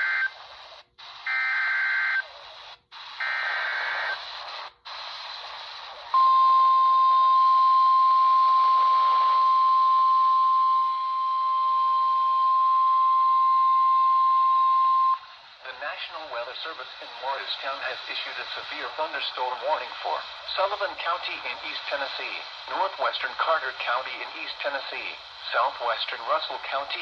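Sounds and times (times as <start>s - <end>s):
steady warning alarm tone: 0.0s - 0.4s, 1.3s - 2.3s, 3.2s - 4.2s, 6.2s - 15.3s
static hiss: 0.0s - 6.3s, 14.0s - 27.0s
digital data tone bursts: 3.2s - 4.2s.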